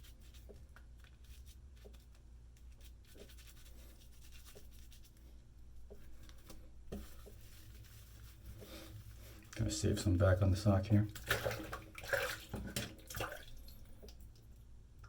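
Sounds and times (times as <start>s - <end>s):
fingers rubbing lather into beard: 0.0s - 5.2s, 7.2s - 9.4s.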